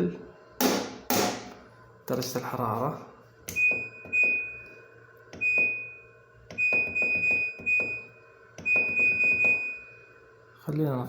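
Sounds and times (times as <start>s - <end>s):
high electronic beep: 6.6s - 10.0s.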